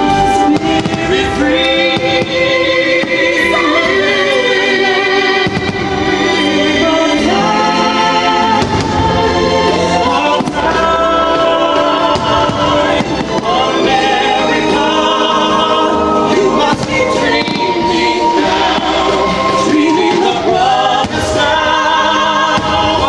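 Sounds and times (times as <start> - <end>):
choir singing held notes: 0.0 - 23.0
fireworks banging: 0.0 - 23.0
orchestral music: 0.0 - 23.0.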